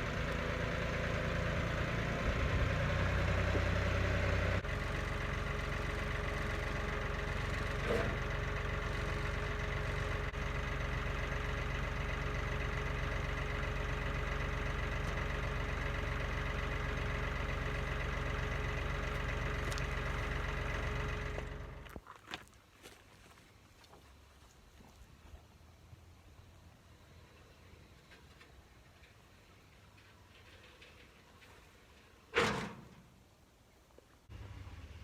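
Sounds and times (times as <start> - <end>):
engine idling: 0.0 - 22.0, 34.3 - 35.0.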